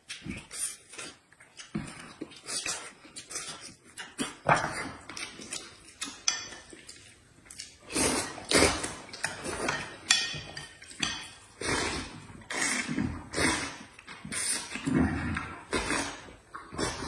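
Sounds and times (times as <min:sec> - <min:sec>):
noisy eating: 0:00.0 - 0:17.0
utensils knocking on bowl: 0:09.2 - 0:11.4.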